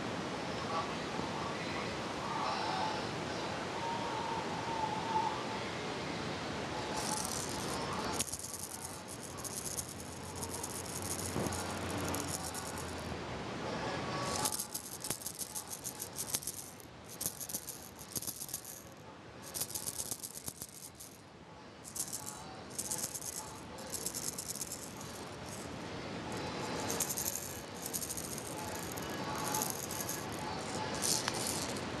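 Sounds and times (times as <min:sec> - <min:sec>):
toy rattle shaken: 0:06.9 - 0:13.1, 0:14.2 - 0:21.2, 0:21.9 - 0:32.0.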